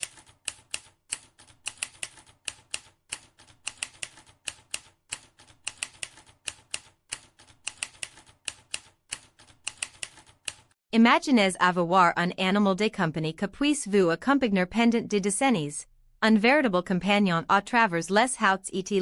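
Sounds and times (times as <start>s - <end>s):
typewriter keys clacking: 0.0s - 10.7s.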